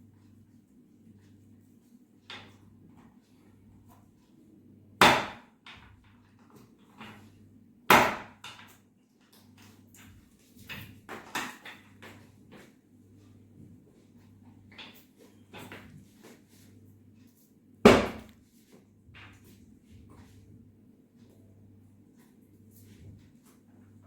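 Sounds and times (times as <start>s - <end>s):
sharp knocks: 17.9s - 18.3s.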